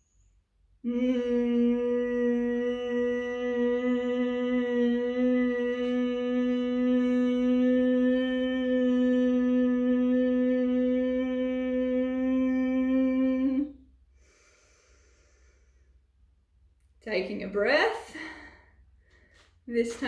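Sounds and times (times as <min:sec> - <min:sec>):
woman humming a long note: 0:00.8 - 0:13.8.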